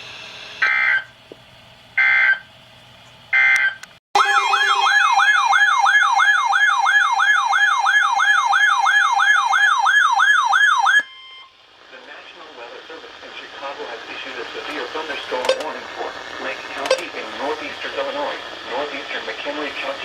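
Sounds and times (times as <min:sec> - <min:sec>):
warbling siren-like attention tone: 0:04.2 - 0:11.5.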